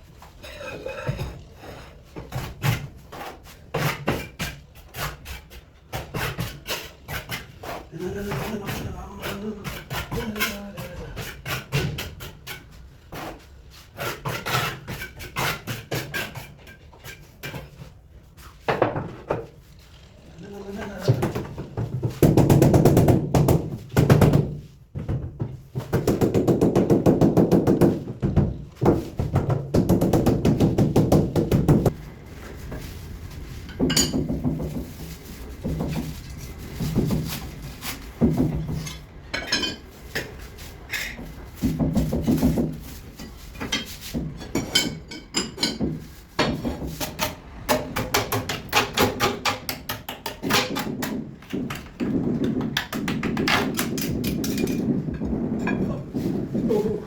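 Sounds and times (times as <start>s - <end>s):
rapid knocking percussion: 21.2s - 24.6s, 25.8s - 31.9s.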